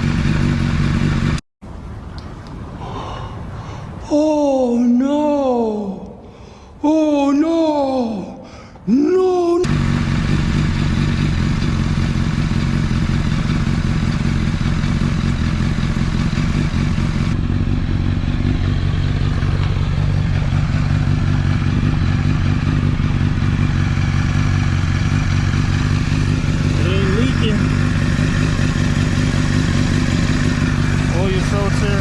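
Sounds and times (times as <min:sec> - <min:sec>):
motorcycle engine idling: 0:00.0 - 0:01.4, 0:09.6 - 0:32.0.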